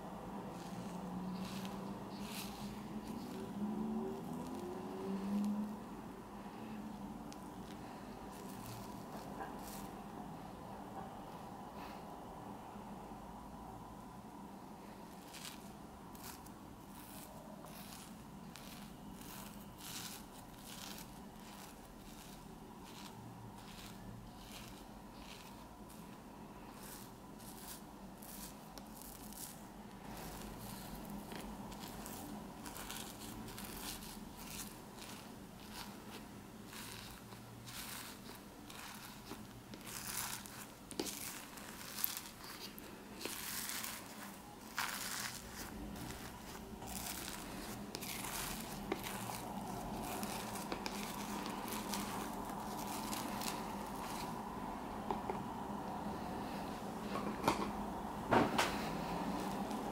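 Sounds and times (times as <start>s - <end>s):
slime crackling: 0.5s - 5.7s, 15.1s - 55.3s.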